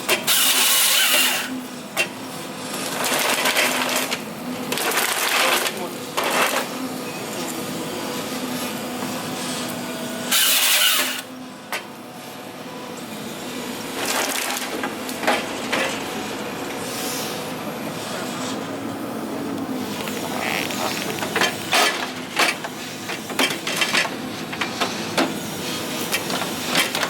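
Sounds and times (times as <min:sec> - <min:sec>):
chainsaw cutting through stem: 0:00.3 - 0:01.5, 0:10.3 - 0:11.3
harvester engine running: 0:11.6 - 0:27.0.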